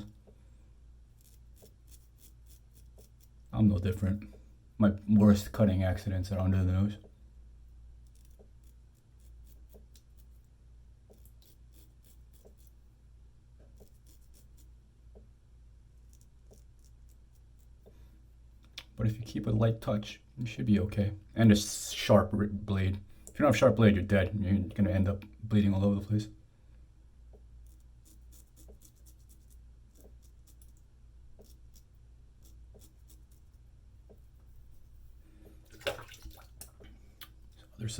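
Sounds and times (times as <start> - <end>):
razor scraping stubble: 1.1 - 3.6, 8.0 - 12.8, 13.6 - 14.8, 16.0 - 17.8, 27.6 - 35.0.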